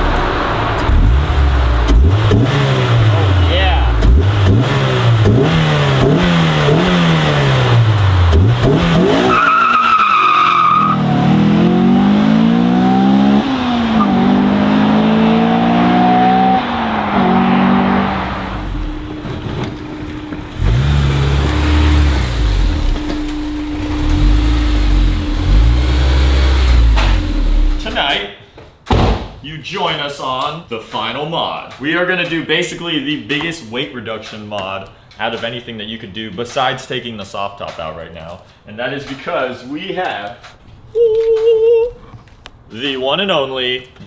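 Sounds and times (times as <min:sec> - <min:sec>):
car engine revving: 0:00.0 - 0:28.1.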